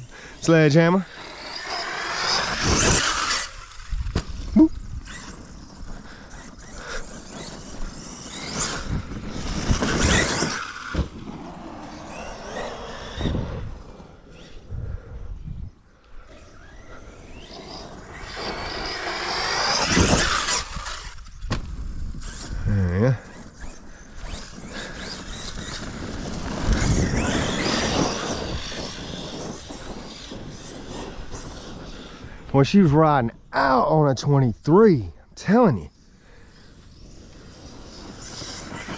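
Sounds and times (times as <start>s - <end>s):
electric motor whining: 0.0s - 14.8s, 16.2s - 32.5s.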